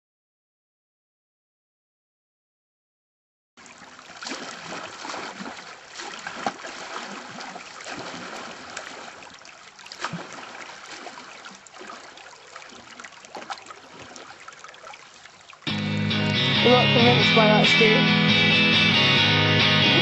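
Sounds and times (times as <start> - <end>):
sharp water splashes: 3.6 - 17.1
running river water: 3.6 - 18.0.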